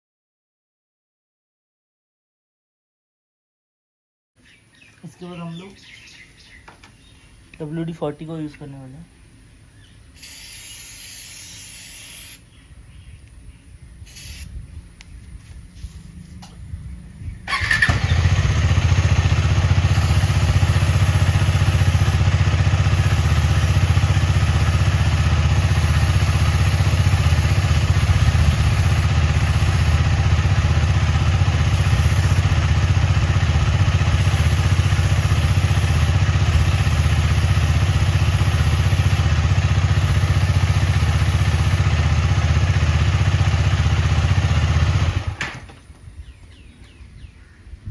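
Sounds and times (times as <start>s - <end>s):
aerosol hiss: 10.2s - 12.4s, 14.0s - 14.5s
motorcycle engine idling: 16.4s - 47.2s.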